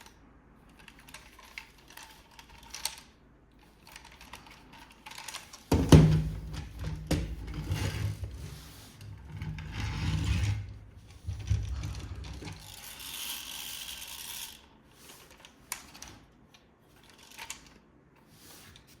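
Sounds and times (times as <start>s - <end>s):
plastic toy parts clicking: 0.0s - 6.8s, 11.6s - 17.8s.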